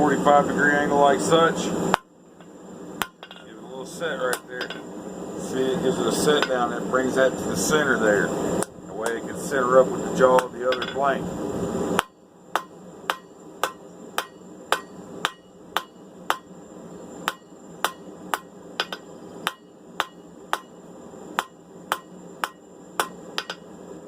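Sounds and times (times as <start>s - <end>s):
hammer striking steel on anvil: 3.0s - 3.5s, 4.3s - 4.8s, 10.4s - 11.0s, 12.0s - 16.5s, 17.2s - 20.8s, 21.4s - 23.7s.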